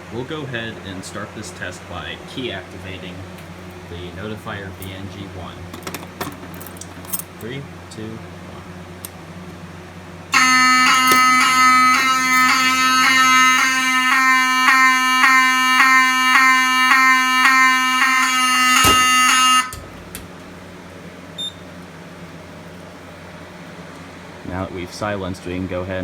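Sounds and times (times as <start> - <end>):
fire alarm horn buzzing: 10.3 - 20.4.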